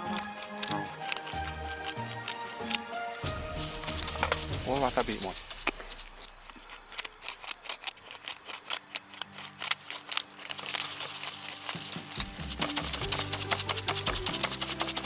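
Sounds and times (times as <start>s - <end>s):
background music: 0.0s - 5.5s, 11.6s - 15.0s
small clicks and crinkling: 0.0s - 15.0s.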